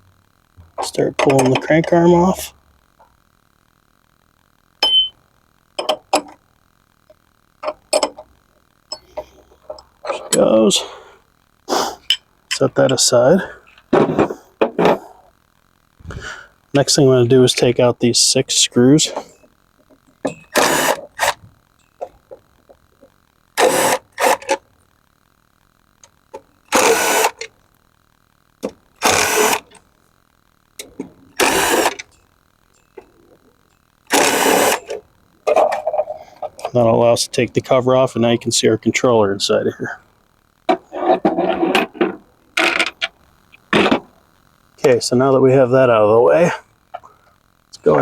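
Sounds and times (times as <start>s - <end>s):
faint steady hum: 0.0s - 48.0s
power drill spinning out screws: 20.5s - 21.4s, 23.6s - 24.5s, 26.7s - 27.5s, 29.0s - 29.8s, 31.4s - 32.0s, 34.1s - 35.0s.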